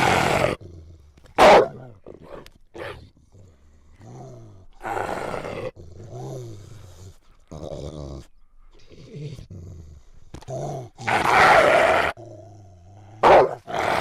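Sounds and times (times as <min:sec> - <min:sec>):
harsh creature roar: 0:00.0 - 0:00.6, 0:11.0 - 0:12.2
creature growling: 0:00.0 - 0:00.8, 0:03.3 - 0:08.3, 0:10.4 - 0:14.0.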